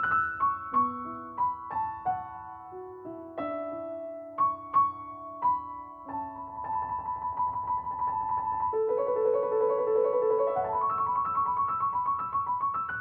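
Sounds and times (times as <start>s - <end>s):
soft slow piano melody: 0.0s - 13.0s.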